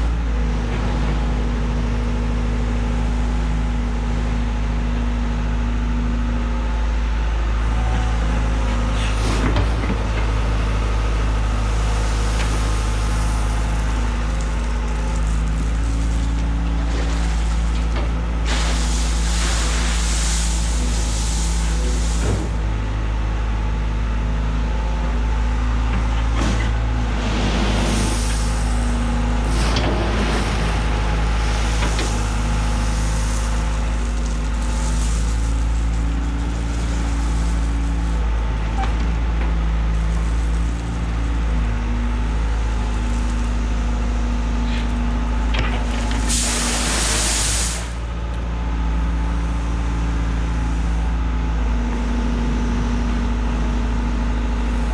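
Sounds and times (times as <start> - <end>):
diesel engine under load: 0.0 - 54.9
short bursts of hissing: 12.6 - 22.6, 46.0 - 48.0.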